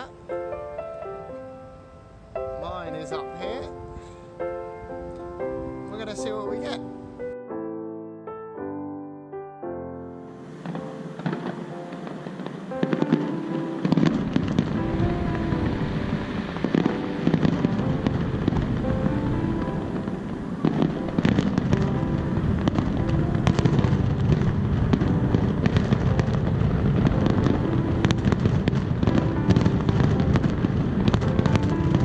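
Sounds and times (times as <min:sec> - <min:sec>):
music playing: 0:00.0 - 0:32.0
fireworks bangs and crackles: 0:10.4 - 0:32.0.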